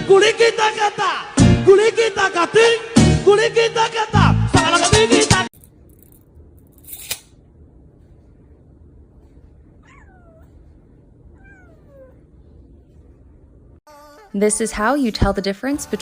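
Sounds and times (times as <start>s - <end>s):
cat meowing: 9.8s - 10.7s, 11.3s - 12.3s, 13.9s - 14.4s.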